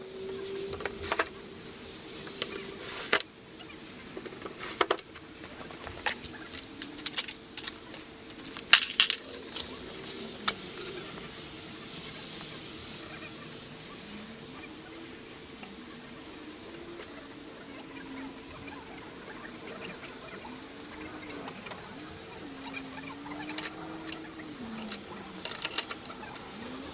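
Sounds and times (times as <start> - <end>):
faint steady hum: 0.0 - 26.9
metal tools clicking and clattering: 6.0 - 9.8.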